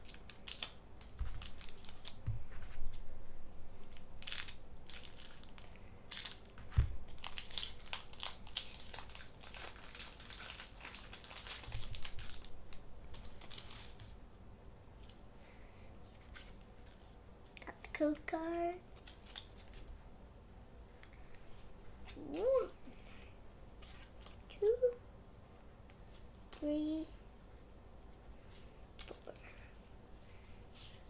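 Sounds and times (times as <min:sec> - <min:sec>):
foil wrapper crinkling and tearing: 0:00.0 - 0:02.3, 0:03.8 - 0:14.1.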